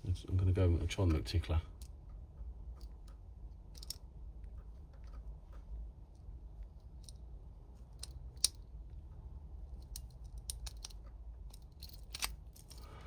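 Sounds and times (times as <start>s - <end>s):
low steady hum: 0.0s - 13.0s
lock pick clicking and scraping: 2.8s - 4.1s, 7.9s - 8.7s, 9.7s - 13.0s.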